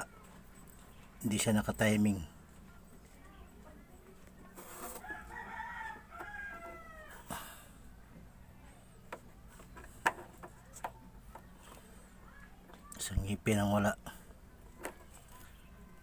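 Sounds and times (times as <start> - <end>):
rooster crowing: 4.9 - 7.3.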